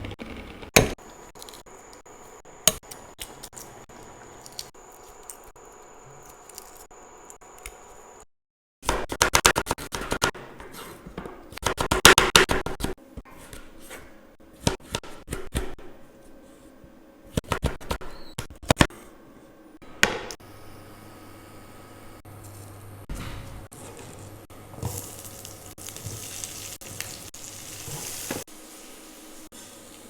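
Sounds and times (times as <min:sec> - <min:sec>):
kitchen scraping and scratching: 0:09.9 - 0:11.9, 0:22.3 - 0:30.0.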